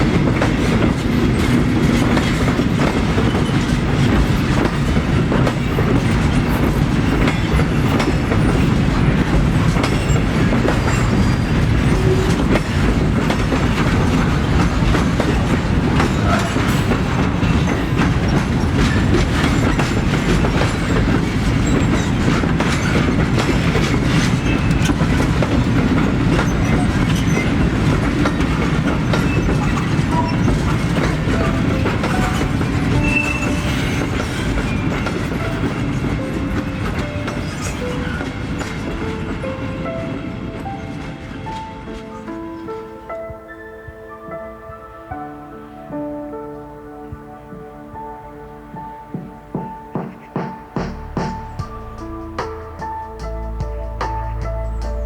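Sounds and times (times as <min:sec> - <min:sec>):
wheels clicking over rail joints: 0:00.0 - 0:42.8
train low rumble: 0:00.0 - 0:43.5, 0:47.1 - 0:55.0.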